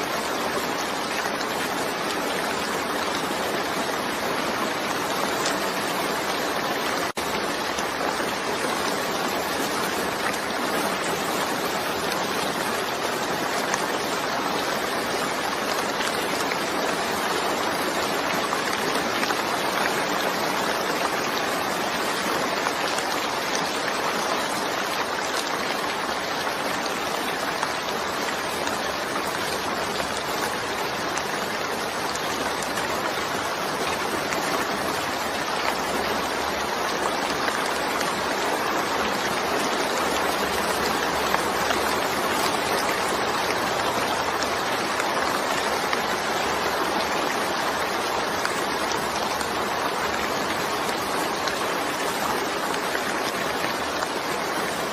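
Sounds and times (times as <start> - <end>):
steady rain falling: 0.0 - 54.9.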